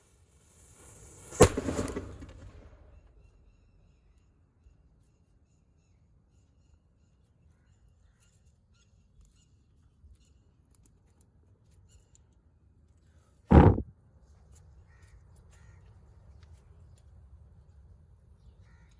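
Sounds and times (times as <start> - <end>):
firecracker bang: 1.2 - 2.9, 13.5 - 13.8.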